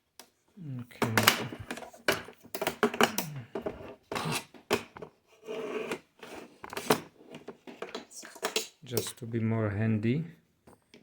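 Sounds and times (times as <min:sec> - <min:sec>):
tools clicking and clattering: 0:01.0 - 0:05.1.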